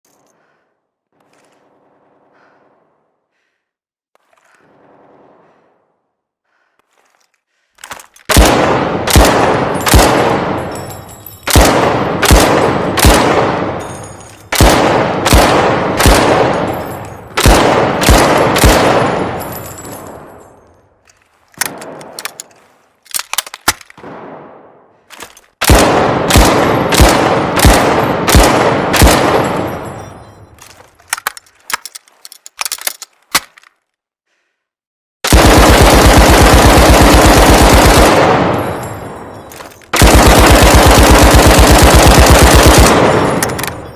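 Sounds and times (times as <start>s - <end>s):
gun firing single shots: 8.3s - 20.4s, 21.6s - 22.4s, 23.6s - 25.0s, 25.6s - 30.0s, 35.3s - 43.9s.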